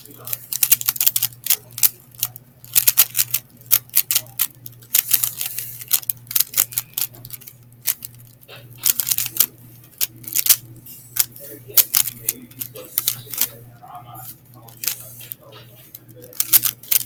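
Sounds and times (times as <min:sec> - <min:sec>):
speed cube clicking: 0:00.0 - 0:17.0
steady low hum: 0:00.0 - 0:17.0.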